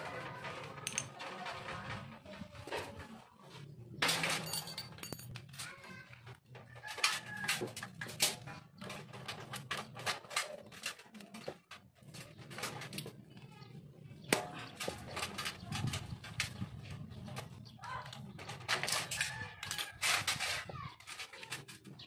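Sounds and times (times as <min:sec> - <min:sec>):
small parts and tools clicking: 0:00.4 - 0:01.9, 0:04.0 - 0:13.7, 0:17.4 - 0:22.0.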